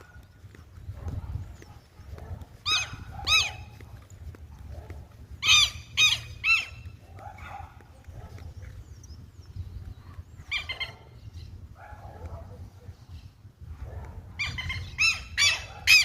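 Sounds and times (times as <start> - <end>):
bird harsh calls: 5.4 - 7.0, 10.4 - 11.7, 14.4 - 16.0.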